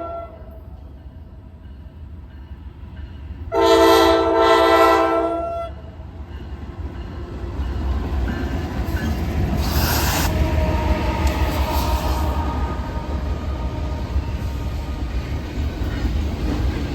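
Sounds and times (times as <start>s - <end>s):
train running noise: 0.0s - 16.9s
locomotive air horn blast: 3.5s - 5.7s, 9.6s - 15.3s.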